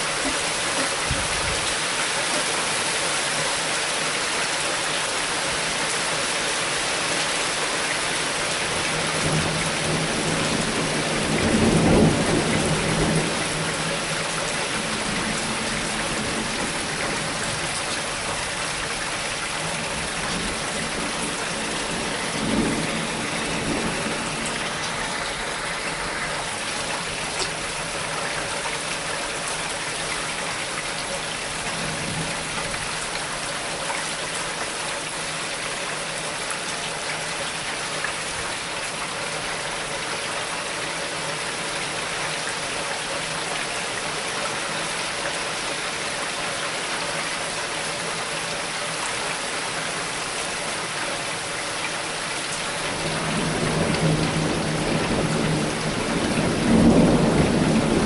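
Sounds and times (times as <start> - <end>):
heavy rain pouring: 0.0 - 58.0
low thunder rumbles: 9.1 - 13.9, 20.0 - 26.1, 53.0 - 58.0.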